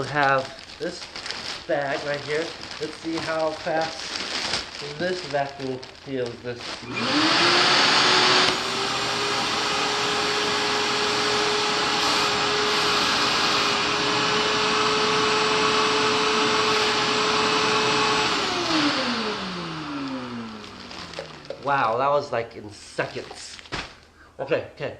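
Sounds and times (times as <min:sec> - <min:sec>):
shop vac running: 0:04.8 - 0:21.9
vacuum motor winding down: 0:06.8 - 0:21.5.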